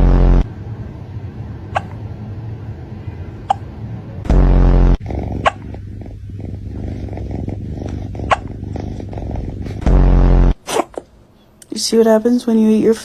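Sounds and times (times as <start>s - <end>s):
loud buzzing tone: 0.0s - 1.8s, 4.2s - 5.0s, 9.8s - 10.6s
low steady rumble: 0.0s - 12.9s
cat hiccuping: 6.9s - 9.0s.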